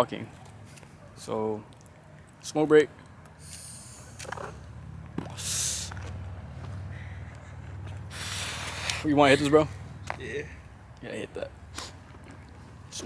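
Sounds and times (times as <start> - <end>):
vape draw hiss: 3.4 - 4.6, 8.1 - 9.1
breathy exhale: 3.4 - 4.7, 8.1 - 9.1.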